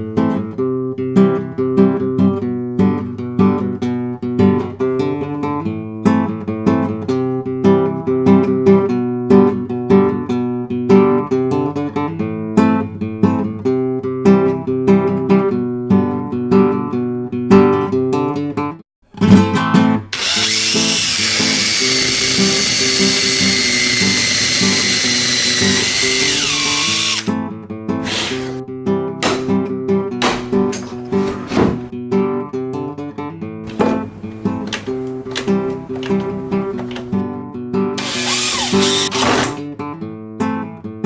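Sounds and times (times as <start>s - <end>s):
acoustic guitar plucking: 0.2s - 20.1s, 28.8s - 38.0s
high whining power tool: 20.2s - 27.3s, 38.0s - 39.3s.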